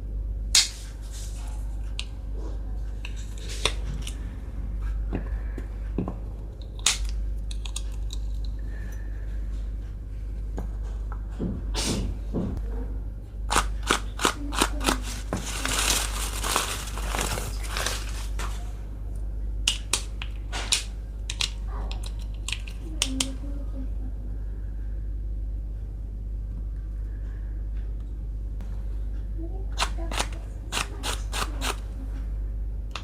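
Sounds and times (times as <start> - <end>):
plastic toy pieces clicking: 6.8 - 8.4
crinkling plastic wrapping: 14.6 - 18.6.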